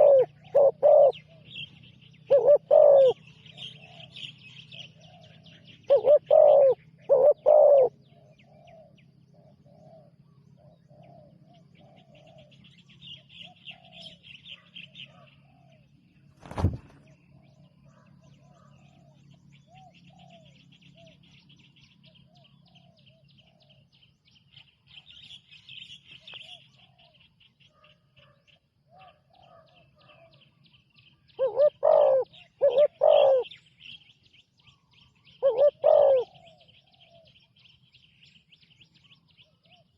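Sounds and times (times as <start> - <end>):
doves cooing: 0.0 - 15.8, 31.4 - 33.6, 35.2 - 37.3.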